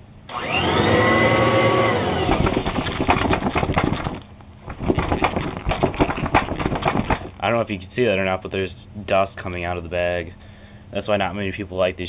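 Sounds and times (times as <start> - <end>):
vacuum motor winding down: 0.3 - 4.2
rapid rattling and flapping: 2.3 - 7.5.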